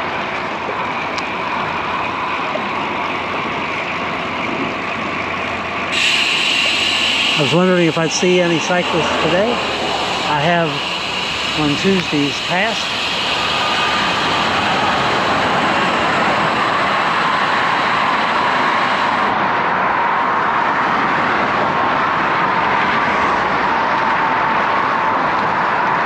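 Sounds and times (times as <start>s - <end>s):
faint hum dropping in pitch: 0.0s - 17.2s
bicycle tyre noise: 0.0s - 19.8s
wind rush: 0.0s - 26.0s.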